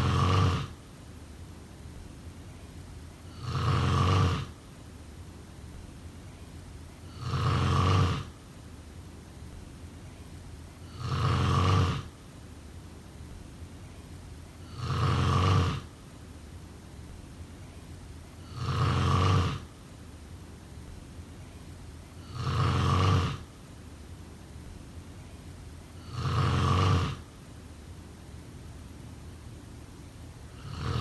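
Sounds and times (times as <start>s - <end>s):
person snoring: 0.0s - 0.8s, 3.2s - 4.6s, 7.0s - 8.3s, 10.8s - 12.1s, 14.6s - 15.9s, 18.4s - 19.7s, 22.2s - 23.5s, 26.0s - 27.2s, 30.5s - 31.0s
faint background noise: 0.0s - 31.0s.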